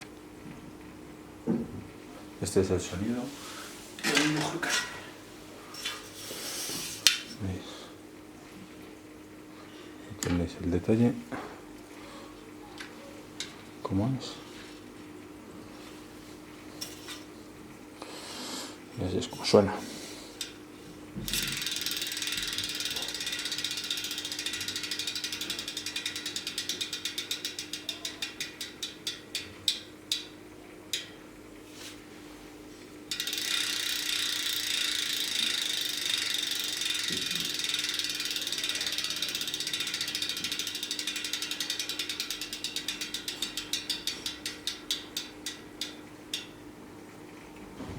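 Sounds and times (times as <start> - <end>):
bicycle freehub clicking: 20.4 - 20.6, 21.2 - 31.2, 33.1 - 46.6.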